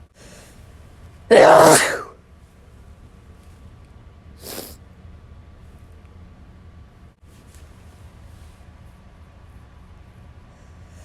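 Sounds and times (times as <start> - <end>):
person sneezing: 1.3 - 2.2, 4.4 - 4.8
faint breathy sound: 10.4 - 11.0.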